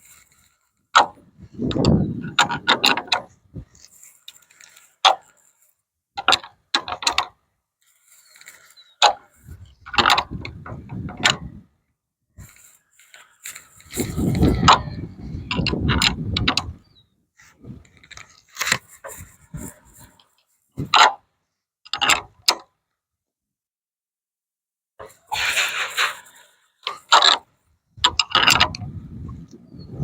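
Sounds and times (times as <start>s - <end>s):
hand tool clicks and clanks: 12.4s - 14.9s, 25.0s - 27.4s.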